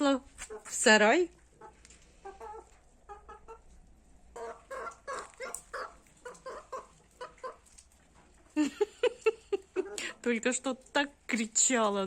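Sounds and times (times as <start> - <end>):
hen clucking: 1.5 - 8.6.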